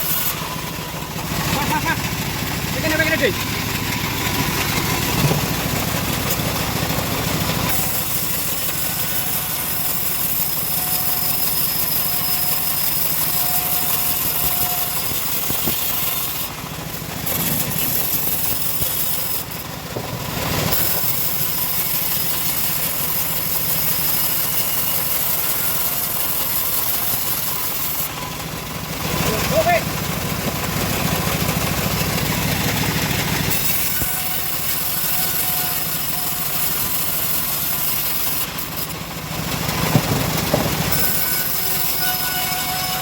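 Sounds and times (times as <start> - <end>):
saw blade hiss: 0.0 - 0.7, 7.7 - 16.6, 17.2 - 19.7, 20.7 - 28.2, 32.5 - 39.0, 40.8 - 43.0
bandsaw sawmill engine hum: 0.0 - 43.0.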